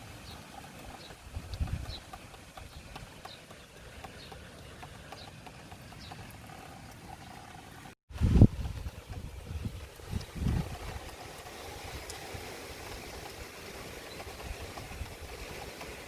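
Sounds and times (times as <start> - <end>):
wind buffeting microphone: 0.9 - 3.2, 8.1 - 16.0.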